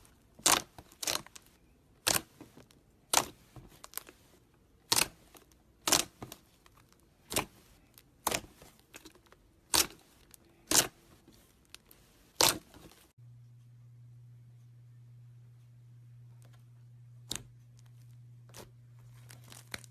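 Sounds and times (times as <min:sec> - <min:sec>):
steady low hum: 0:07.0 - 0:19.9.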